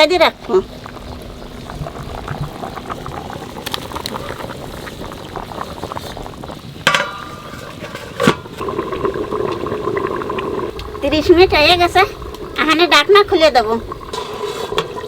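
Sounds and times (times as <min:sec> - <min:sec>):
pot of curry boiling: 0:00.0 - 0:15.0.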